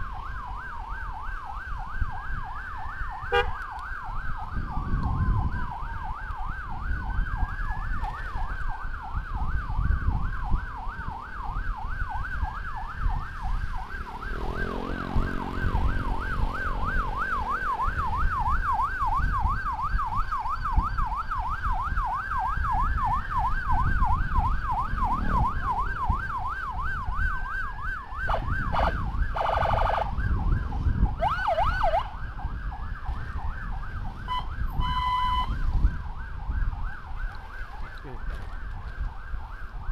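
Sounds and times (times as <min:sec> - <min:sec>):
warbling siren yelp: 0:00.0 - 0:38.4
road and engine rumble: 0:00.0 - 0:39.9
wailing siren: 0:00.0 - 0:39.9.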